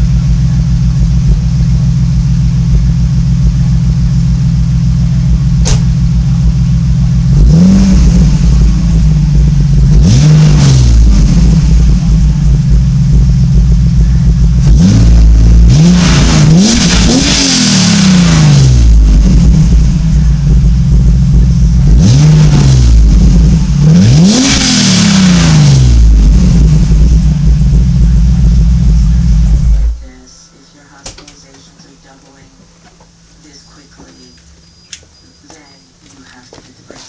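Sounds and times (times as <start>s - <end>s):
car engine idling and revving: 0.0s - 37.0s.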